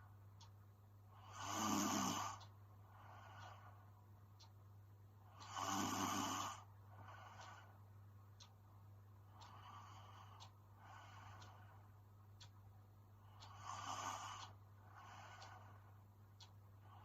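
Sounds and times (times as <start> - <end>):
soft breaths: 0.0 - 4.6, 5.2 - 17.0
woman snoring: 1.2 - 2.4, 5.4 - 6.6.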